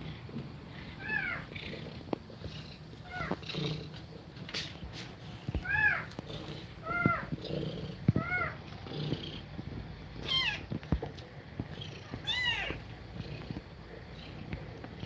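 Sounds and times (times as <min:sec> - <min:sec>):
low steady purr: 0:00.0 - 0:15.0
kittens mewing: 0:00.9 - 0:01.8, 0:03.0 - 0:03.8, 0:05.6 - 0:08.7, 0:10.2 - 0:10.7, 0:12.0 - 0:13.0.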